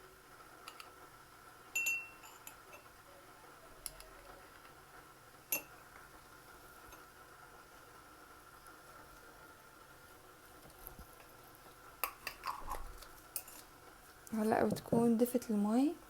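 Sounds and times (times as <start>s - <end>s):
spoon clinking against a dish: 1.8s - 2.9s, 5.5s - 5.8s.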